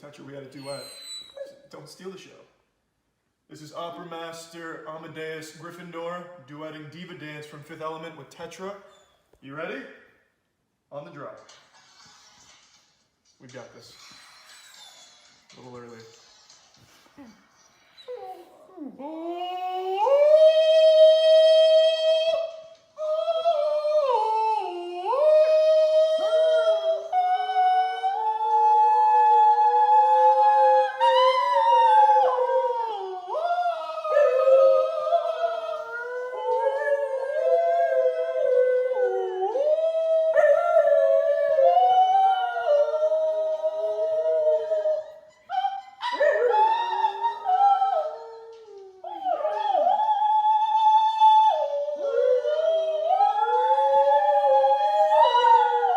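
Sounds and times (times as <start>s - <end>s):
dog howling: 18.1s - 55.9s.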